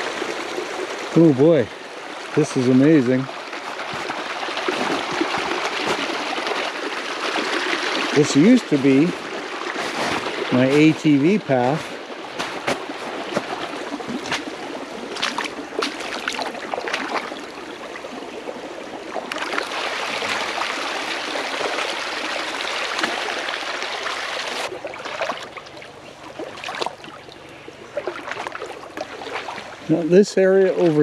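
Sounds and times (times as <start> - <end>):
floodwater rushing: 0.0 - 31.0.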